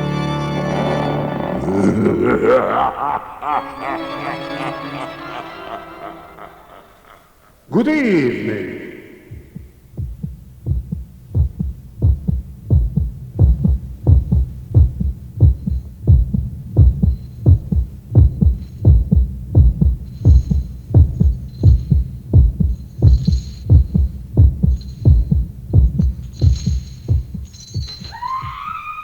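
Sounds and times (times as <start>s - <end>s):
heartbeat thumps: 9.2s - 28.7s.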